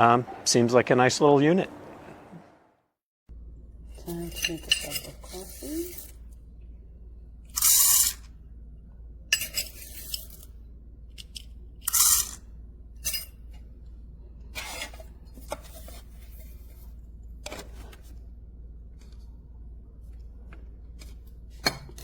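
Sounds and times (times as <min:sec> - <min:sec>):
dishes clinking and knocking: 0:04.2 - 0:05.4.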